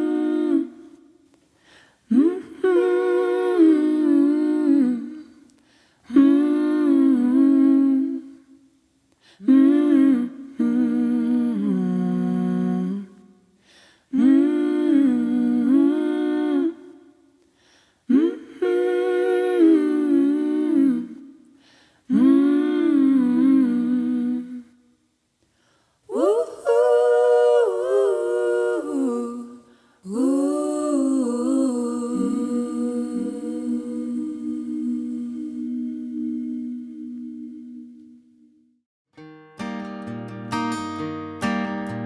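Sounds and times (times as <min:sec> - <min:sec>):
person humming a slow melody: 0:00.0 - 0:01.0, 0:02.1 - 0:05.5, 0:06.1 - 0:08.4, 0:09.4 - 0:13.2, 0:14.1 - 0:17.1, 0:18.1 - 0:21.3, 0:22.1 - 0:24.8, 0:26.1 - 0:38.6.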